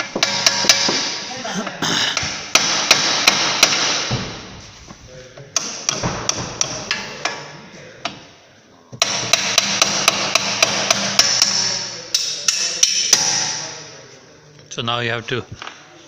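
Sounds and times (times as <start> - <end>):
hammer striking metal: 0.0 - 1.2, 2.2 - 4.4, 5.6 - 7.5, 9.0 - 13.8.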